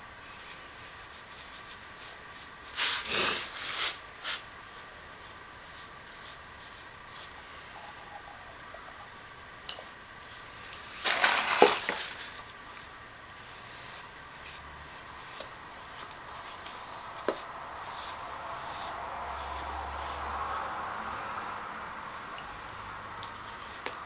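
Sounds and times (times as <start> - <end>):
faint steady hum: 0.0 - 24.0
rubbing scraping handling noise: 0.4 - 9.0, 10.2 - 20.6.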